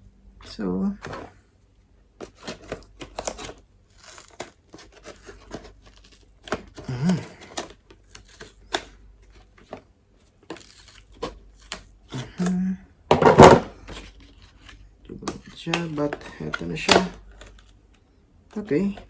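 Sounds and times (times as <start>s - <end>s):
plastic packaging being cut open: 2.2s - 9.0s, 10.5s - 12.5s.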